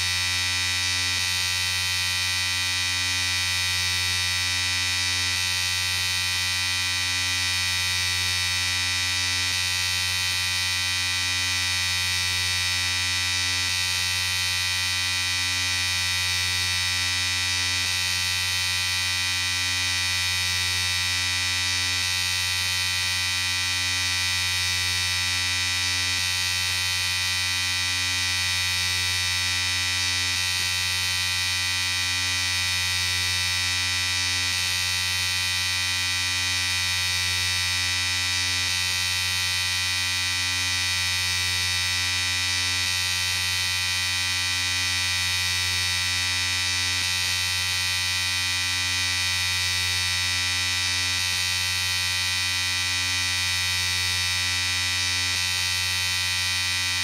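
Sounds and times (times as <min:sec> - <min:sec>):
electric shaver buzzing: 0:00.0 - 0:57.0.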